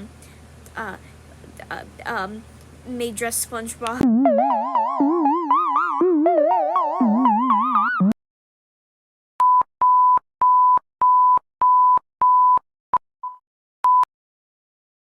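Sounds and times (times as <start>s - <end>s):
warbling electronic tone: 4.0s - 8.2s.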